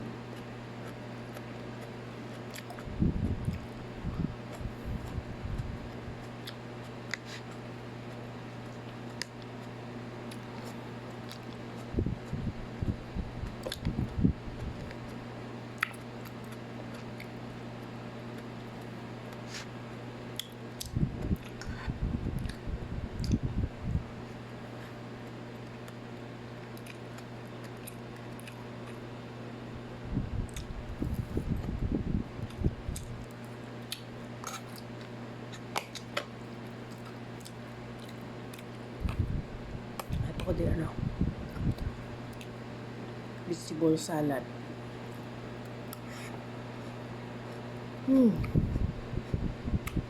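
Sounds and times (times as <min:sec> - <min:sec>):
fan hum: 0:00.0 - 0:50.0
chewing and mouth sounds: 0:00.3 - 0:12.5, 0:13.4 - 0:19.7, 0:20.3 - 0:23.5, 0:24.7 - 0:29.1, 0:30.5 - 0:31.8, 0:32.4 - 0:40.6, 0:41.5 - 0:42.6, 0:48.3 - 0:50.0.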